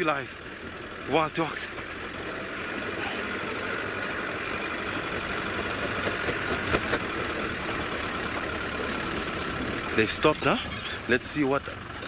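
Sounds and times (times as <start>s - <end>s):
vehicle engine running: 0.0s - 12.0s
knocks and rattles: 5.6s - 10.0s.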